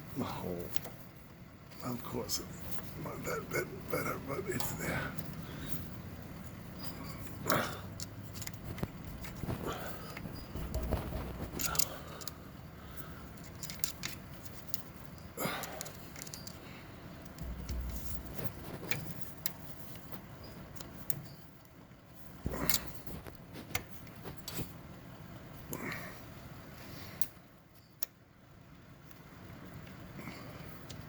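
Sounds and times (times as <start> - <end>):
sharp knocks: 17.4 - 19.0.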